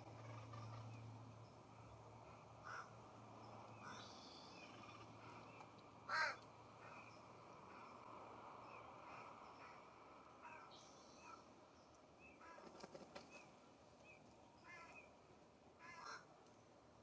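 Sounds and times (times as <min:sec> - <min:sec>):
crow cawing: 0:02.6 - 0:02.9, 0:03.8 - 0:04.1, 0:06.1 - 0:07.0, 0:15.8 - 0:16.3.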